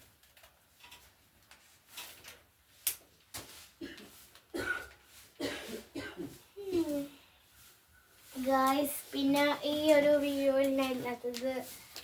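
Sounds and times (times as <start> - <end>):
packaging rustling and scratching: 6.7 - 12.0.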